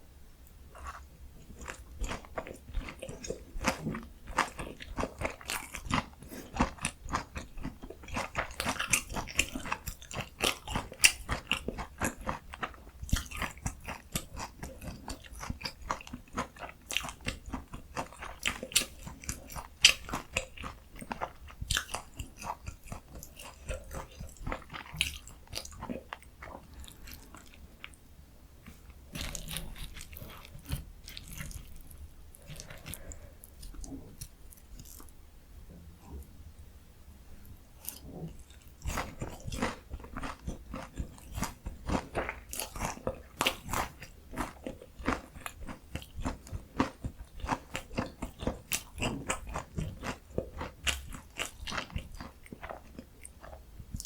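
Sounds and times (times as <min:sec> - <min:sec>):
crunchy biting and chewing: 0:00.7 - 0:28.0, 0:28.7 - 0:35.1, 0:37.8 - 0:54.0.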